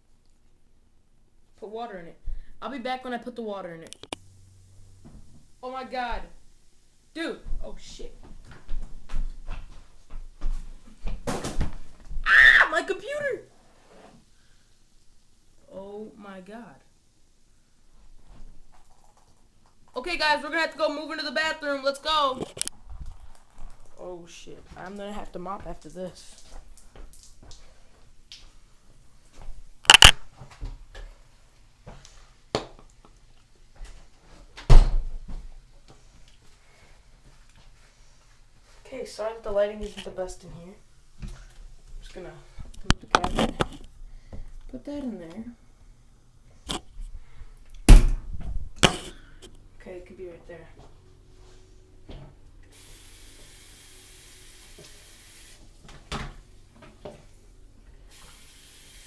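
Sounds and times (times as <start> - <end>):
steady hiss: 52.7 - 59.0.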